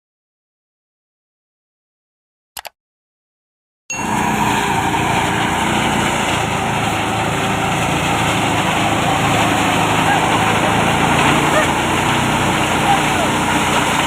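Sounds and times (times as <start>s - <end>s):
brief clicks: 2.6s - 2.8s
threshing machine running: 3.9s - 14.0s.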